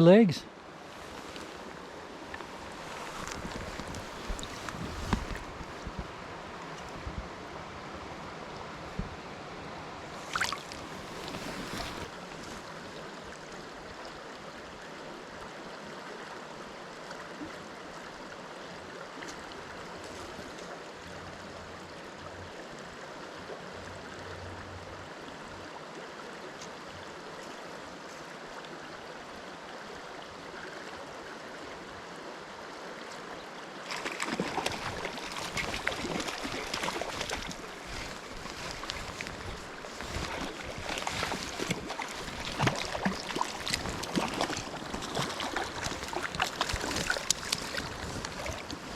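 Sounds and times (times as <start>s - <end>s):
flowing stream rushing: 0.0s - 48.9s
water splashing: 2.7s - 6.0s, 10.2s - 12.1s, 33.9s - 48.9s.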